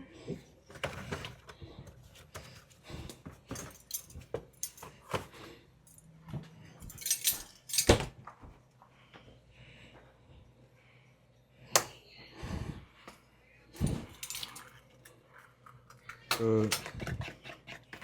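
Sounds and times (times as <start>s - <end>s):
utensils clattering: 6.8s - 8.0s, 13.8s - 17.2s
kitchen utensils clicking and clinking: 6.8s - 8.1s, 13.8s - 18.0s.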